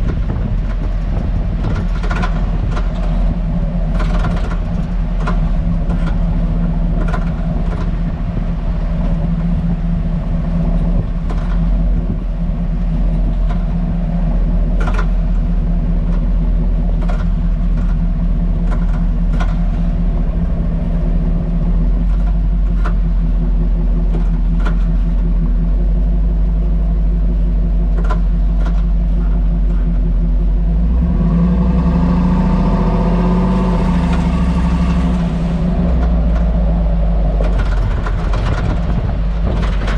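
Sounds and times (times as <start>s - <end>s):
rattling clicks and taps: 0.0s - 8.5s, 10.7s - 12.3s, 13.2s - 14.1s, 14.7s - 16.3s, 16.9s - 20.0s, 22.0s - 25.6s, 27.9s - 30.1s, 34.0s - 36.6s, 37.3s - 39.9s
drivetrain and tyre drone: 0.0s - 39.9s.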